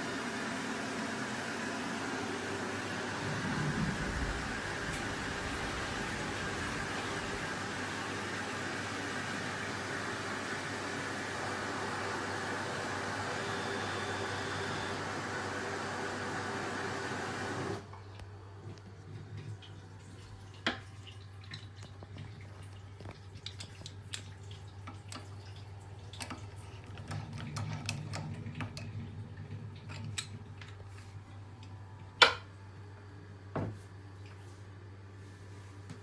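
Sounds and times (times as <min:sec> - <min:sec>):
water running in basin: 0:02.3 - 0:12.4, 0:18.5 - 0:30.0
low steady hum: 0:03.0 - 0:08.0
low drone: 0:03.1 - 0:07.0.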